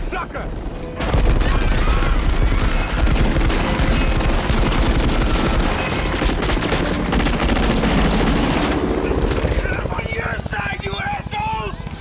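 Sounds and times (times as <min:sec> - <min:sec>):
machine gun firing: 0:01.0 - 0:09.9.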